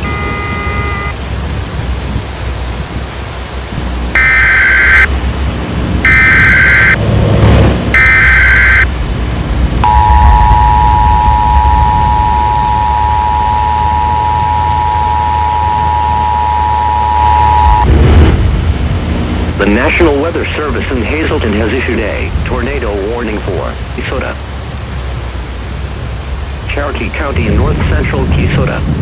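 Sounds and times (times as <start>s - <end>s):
two-tone attention signal: 0.0s - 1.2s, 4.2s - 5.1s, 6.1s - 7.0s, 8.0s - 8.9s, 9.8s - 17.9s
rain: 0.0s - 29.0s
thunder rumble: 1.2s - 29.0s
warbling data bursts: 3.8s - 5.1s, 6.0s - 7.0s, 7.9s - 8.9s, 9.8s - 17.9s.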